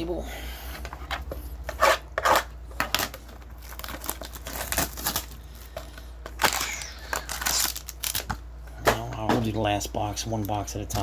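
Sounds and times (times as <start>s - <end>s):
plastic wrapping tearing and crinkling: 2.3s - 8.4s.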